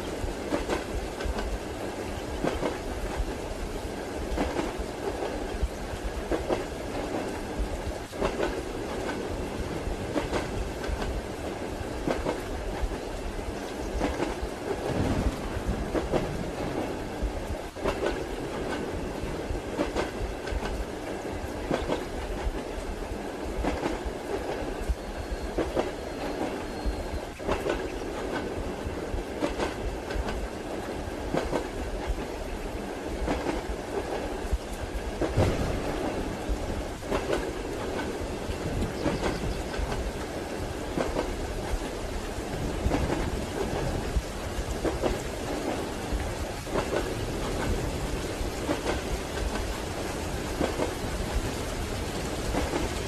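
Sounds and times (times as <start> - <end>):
train rumble and hiss: 0.0 - 53.0
wheels clacking over rail joints: 8.0 - 9.4.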